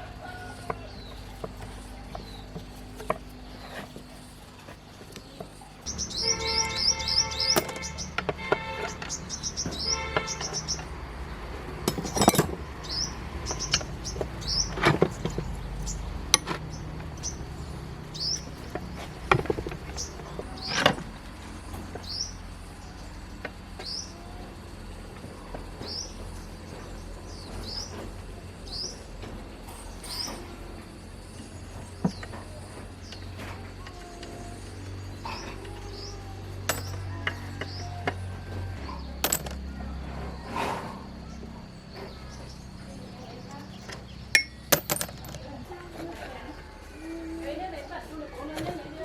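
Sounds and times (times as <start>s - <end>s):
bird chirping: 0.0s - 24.4s
knocks and clatters of parts: 5.0s - 11.0s, 11.6s - 17.3s, 18.2s - 22.2s, 36.6s - 40.3s, 43.8s - 46.1s.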